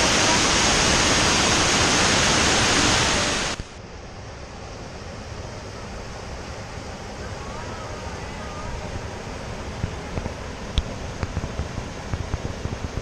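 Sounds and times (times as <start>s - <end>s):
waterfall rushing: 0.0s - 3.8s, 6.9s - 12.3s.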